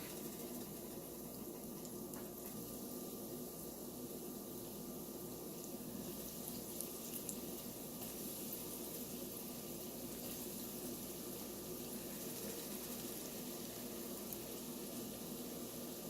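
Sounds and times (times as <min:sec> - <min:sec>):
food sizzling in hot oil: 0:00.0 - 0:16.0
faint oil crackles: 0:05.3 - 0:16.0.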